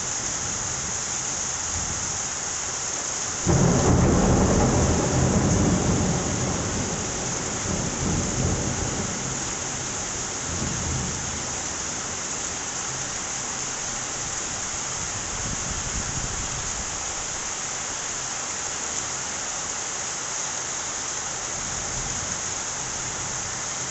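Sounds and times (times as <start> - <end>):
heavy rain hiss: 0.0 - 23.9
thunder rumbling: 3.4 - 11.5.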